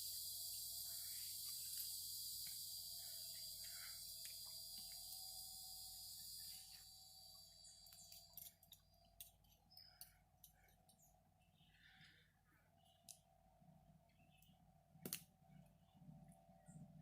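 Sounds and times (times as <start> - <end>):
cicada buzzing: 0.0 - 8.5.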